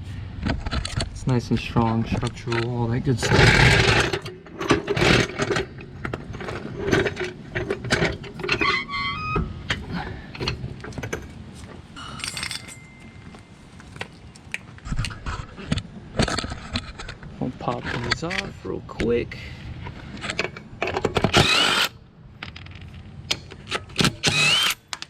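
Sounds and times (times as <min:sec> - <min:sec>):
floor jack metal clinks: 0:12.0 - 0:13.6.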